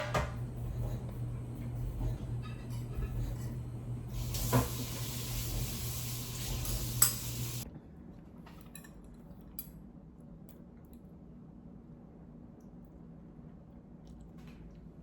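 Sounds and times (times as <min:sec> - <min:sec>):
dishes clinking: 0:00.0 - 0:07.6
steady low hum: 0:00.0 - 0:08.0.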